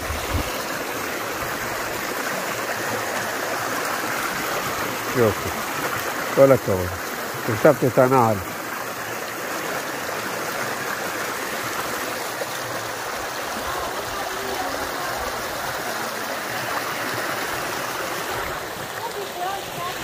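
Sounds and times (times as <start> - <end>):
stream water rushing: 0.0 - 20.0.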